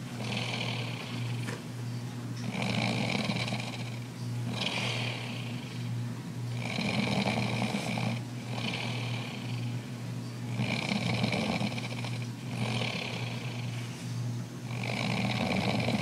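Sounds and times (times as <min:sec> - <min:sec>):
man snoring heavily: 0:00.0 - 0:01.4, 0:02.4 - 0:05.9, 0:06.6 - 0:09.8, 0:10.5 - 0:13.8, 0:14.6 - 0:16.0
steady low hum: 0:00.0 - 0:16.0.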